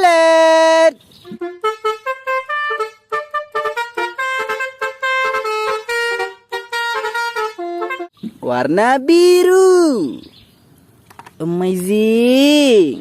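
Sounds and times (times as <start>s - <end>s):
toy bus horn tune: 1.3s - 8.2s.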